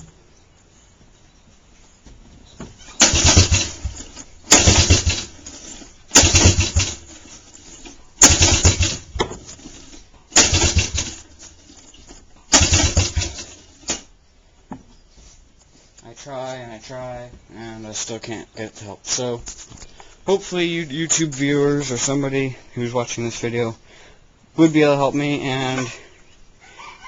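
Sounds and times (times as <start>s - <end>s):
engine pull-start cranking: 2.8s - 14.1s.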